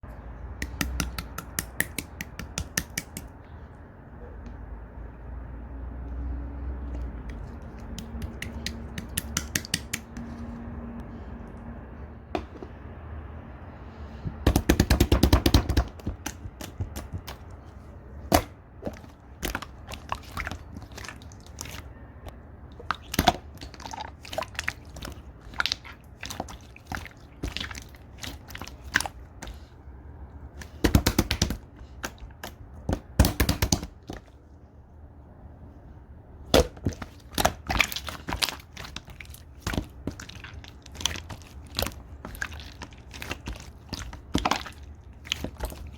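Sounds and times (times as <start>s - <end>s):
slime squishing and popping: 22.8s - 29.2s.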